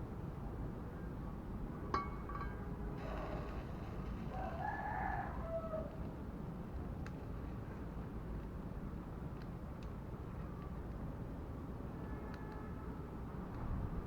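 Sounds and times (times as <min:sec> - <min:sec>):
low background noise: 0:00.0 - 0:14.0
rooster crowing: 0:04.3 - 0:06.0.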